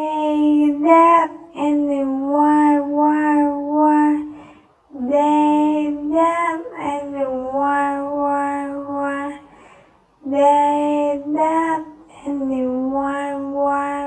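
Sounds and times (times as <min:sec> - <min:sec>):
person singing long notes: 0:05.0 - 0:09.5, 0:10.2 - 0:14.0.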